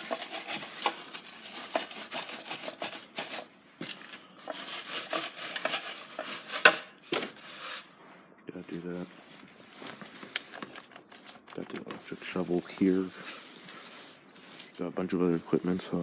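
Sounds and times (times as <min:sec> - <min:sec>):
tools and containers clattering: 0:00.0 - 0:07.8.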